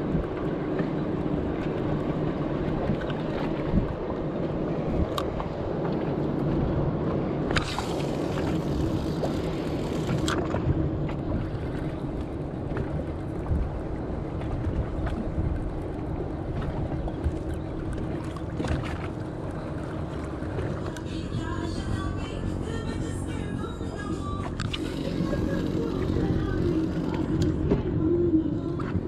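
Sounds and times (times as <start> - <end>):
wind on microphone: 0.0 - 29.0
motor running: 7.6 - 10.6, 20.9 - 28.8.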